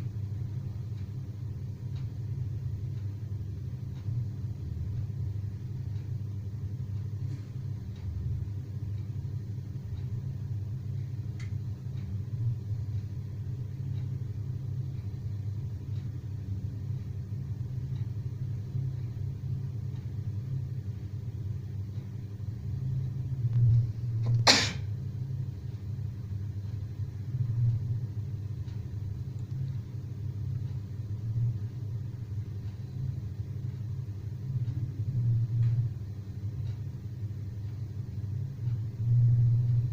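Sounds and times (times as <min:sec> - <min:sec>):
sharp click: 0:24.2 - 0:24.8.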